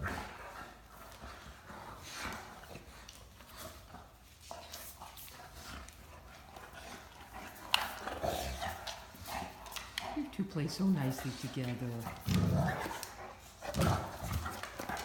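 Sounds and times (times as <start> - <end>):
dogs scuffling: 0.0 - 15.0.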